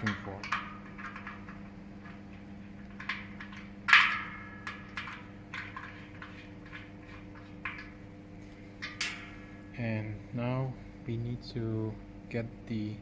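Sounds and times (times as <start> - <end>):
metal parts clicking and tapping: 0.0 - 8.0
faint steady hum: 0.0 - 13.0
metallic ring: 3.0 - 8.0, 8.8 - 10.1.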